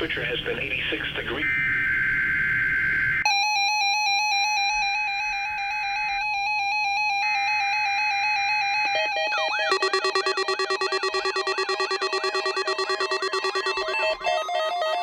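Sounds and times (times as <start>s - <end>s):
screeching data bursts: 9.7s - 14.2s
buzzy electronic alert tone: 9.7s - 15.0s.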